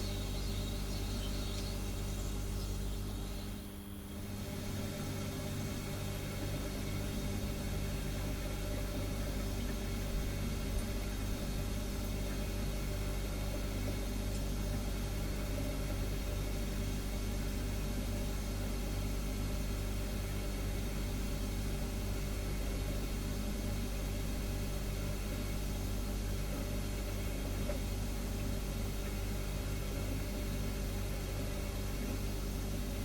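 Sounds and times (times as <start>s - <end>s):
refrigerator humming: 0.0s - 33.0s.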